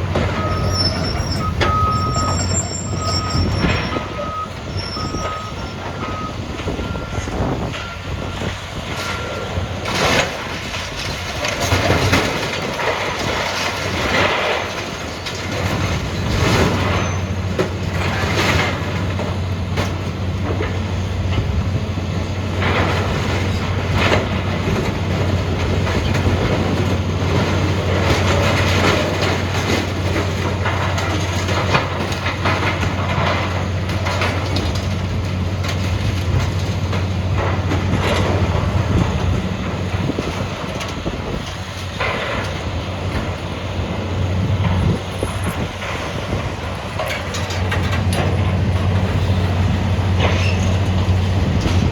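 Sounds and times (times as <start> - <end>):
excavator engine hum: 0.0 - 51.9
sheet metal clanking and crunching: 22.4 - 51.9.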